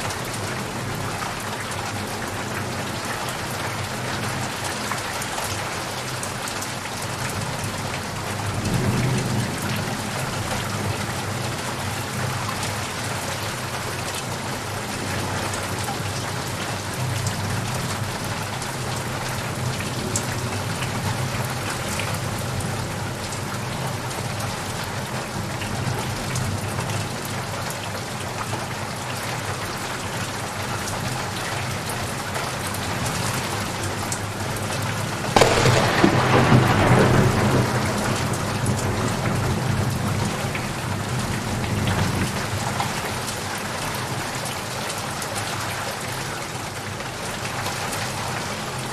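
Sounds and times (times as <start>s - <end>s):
steady rain: 0.0s - 48.9s
thunder rumble: 35.3s - 40.4s
loud thunderclap: 35.4s - 39.8s.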